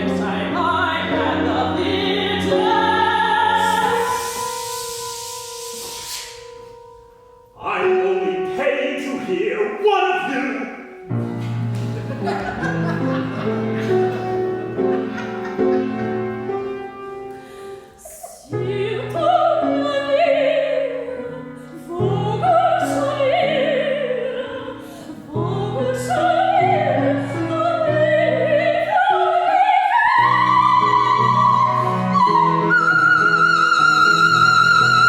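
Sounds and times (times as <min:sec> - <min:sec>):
operatic soprano singing: 0:00.0 - 0:06.6, 0:17.8 - 0:35.0
piano chords: 0:00.0 - 0:35.0.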